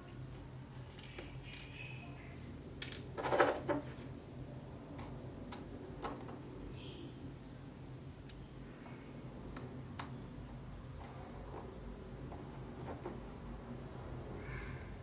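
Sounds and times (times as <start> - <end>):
small parts clicking and clinking: 0.8 - 1.8, 2.8 - 3.4.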